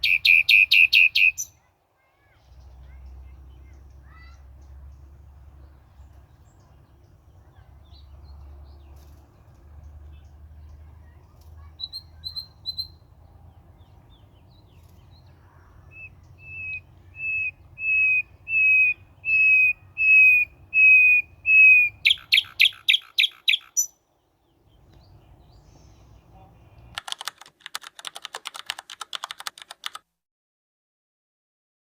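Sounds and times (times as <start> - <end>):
bird chattering: 0.0 - 1.5, 15.4 - 24.0
bird whistling calls: 0.0 - 1.5, 15.9 - 23.9.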